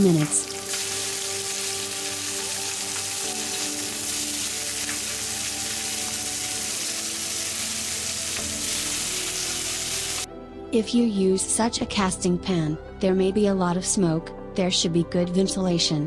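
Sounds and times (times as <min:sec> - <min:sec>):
chicken sizzling on grill pan: 0:00.2 - 0:10.3.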